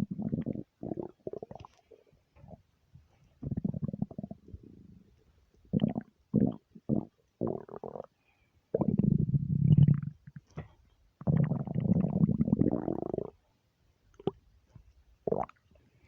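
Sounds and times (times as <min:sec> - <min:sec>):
stomach gurgling and rumbling: 0:00.0 - 0:02.7, 0:03.4 - 0:05.1, 0:05.7 - 0:13.4, 0:15.2 - 0:15.6.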